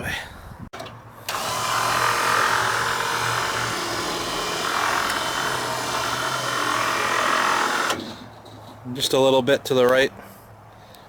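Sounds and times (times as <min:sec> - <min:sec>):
electric winch motor whirring: 0:00.8 - 0:08.3.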